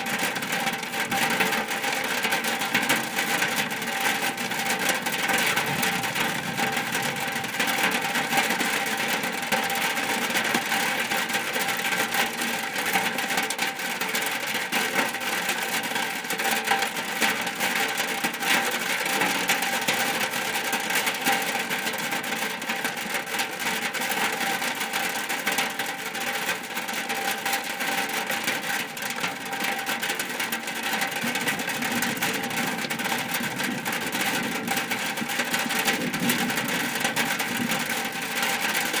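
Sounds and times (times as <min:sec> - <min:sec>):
rain on a shack roof: 0:00.0 - 0:39.0.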